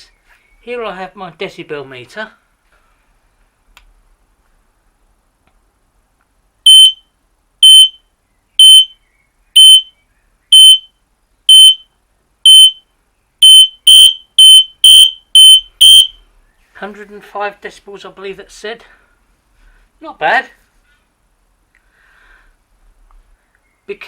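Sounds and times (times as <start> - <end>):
smoke alarm beeping: 6.7 - 7.0, 7.6 - 8.0, 8.6 - 8.9, 9.6 - 9.9, 10.5 - 10.9, 11.5 - 11.8, 12.4 - 12.8, 13.4 - 16.1.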